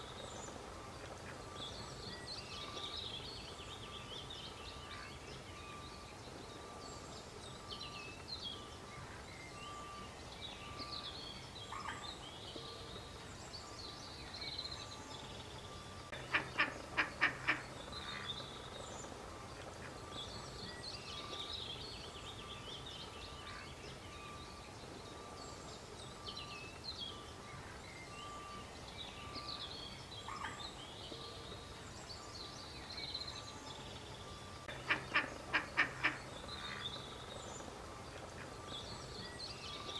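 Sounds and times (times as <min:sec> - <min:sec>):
small birds chirping: 0:00.0 - 0:39.9
duck quacking: 0:16.2 - 0:17.7, 0:34.7 - 0:36.8.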